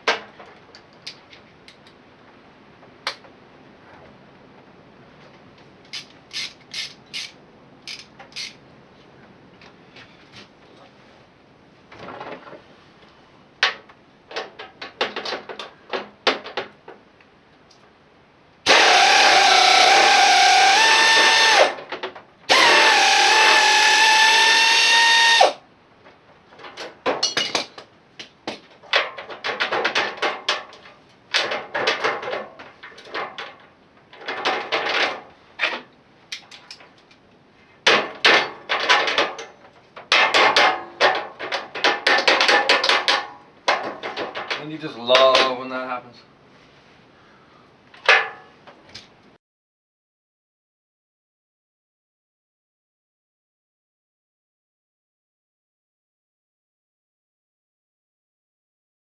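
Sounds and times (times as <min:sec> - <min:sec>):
air impact wrench whining: 0:18.7 - 0:21.8, 0:22.5 - 0:25.6.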